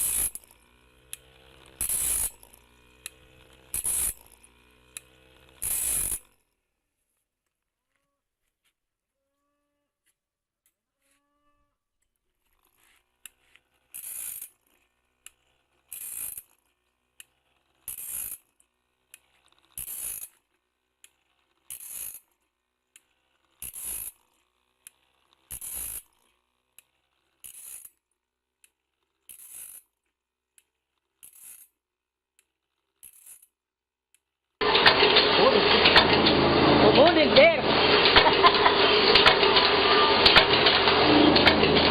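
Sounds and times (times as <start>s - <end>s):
saw sharpener grinding: 0.0s - 6.7s, 12.4s - 29.8s, 34.6s - 41.9s
machine clicking: 34.6s - 41.9s.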